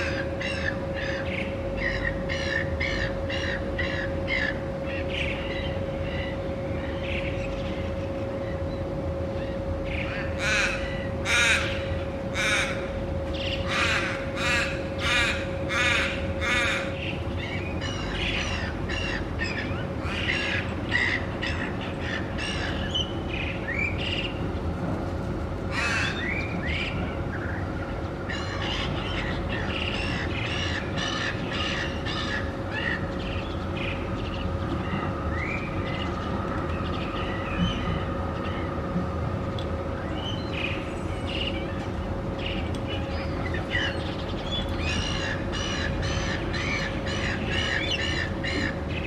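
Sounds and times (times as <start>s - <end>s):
raven cawing: 0.0s - 5.0s, 10.1s - 13.0s, 13.6s - 17.0s, 25.7s - 26.2s, 28.3s - 33.0s, 44.8s - 48.8s
low background rumble: 0.0s - 49.0s
steady hum: 0.0s - 49.0s.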